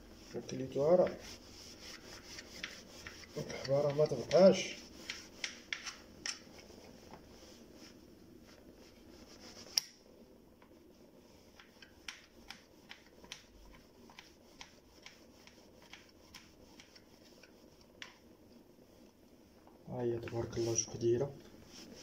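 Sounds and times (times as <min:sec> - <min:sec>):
small clicks and taps of objects: 0:11.5 - 0:18.2.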